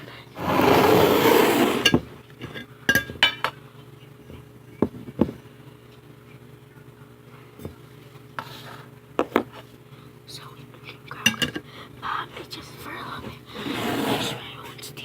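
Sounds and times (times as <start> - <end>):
dishes clinking: 1.7 - 3.6.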